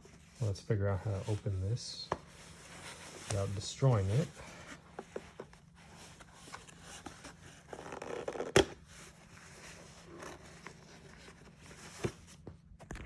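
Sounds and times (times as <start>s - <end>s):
cardboard box scraping and rustling: 2.4s - 12.3s.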